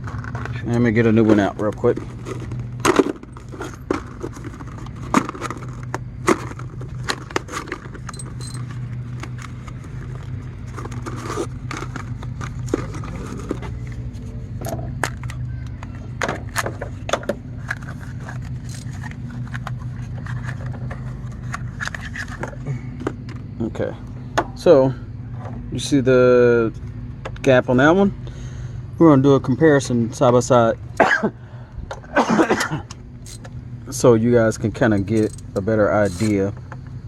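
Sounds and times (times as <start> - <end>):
packaging rattles and clicks: 0.0 - 14.3, 14.9 - 23.4
low hum: 0.0 - 37.0.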